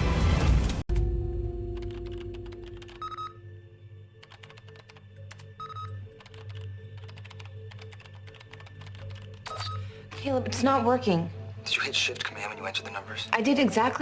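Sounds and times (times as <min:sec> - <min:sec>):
soft background music: 0:00.3 - 0:14.0
typing on computer keyboard: 0:01.8 - 0:03.3, 0:04.2 - 0:09.5
short electronic beeps: 0:09.5 - 0:09.8.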